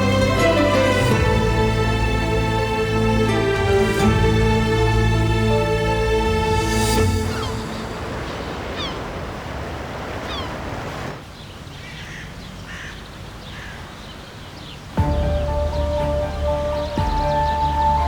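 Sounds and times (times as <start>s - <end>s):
steady rushing noise: 0.0s - 11.3s
birds chirping: 0.0s - 18.0s.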